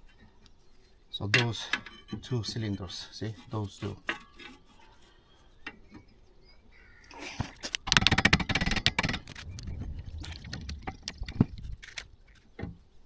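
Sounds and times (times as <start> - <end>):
rapid clicking: 7.6 - 12.1.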